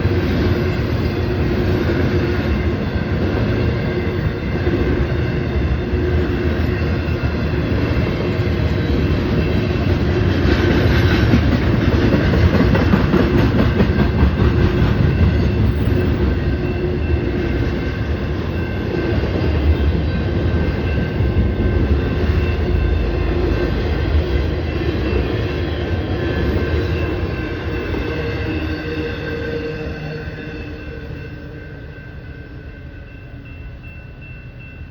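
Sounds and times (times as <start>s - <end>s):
freight train rumbling past: 0.0s - 34.9s
wheels clicking on rail: 6.6s - 28.0s
faint high ringing tones: 15.0s - 34.9s.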